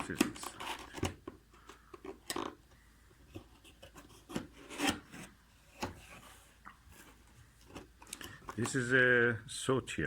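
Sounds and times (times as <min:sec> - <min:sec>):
packaging rubbing and scraping: 0:00.0 - 0:02.2, 0:03.4 - 0:08.9.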